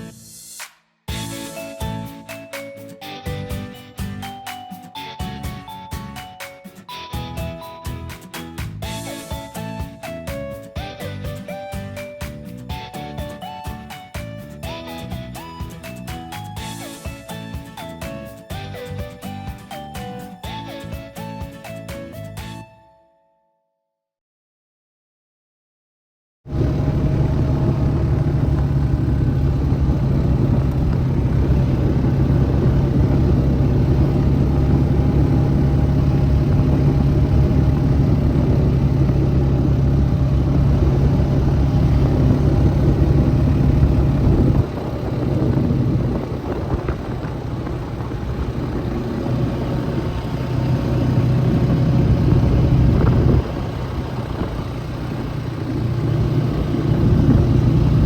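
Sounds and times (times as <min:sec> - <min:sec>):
vehicle engine running: 0:26.5 - 0:58.0.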